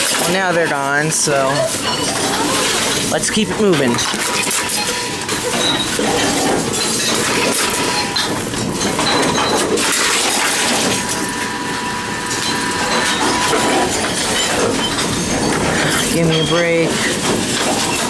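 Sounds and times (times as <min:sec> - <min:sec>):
cans and bottles clattering: 0:00.0 - 0:11.4, 0:12.2 - 0:18.0
faint machine tone: 0:11.8 - 0:17.0.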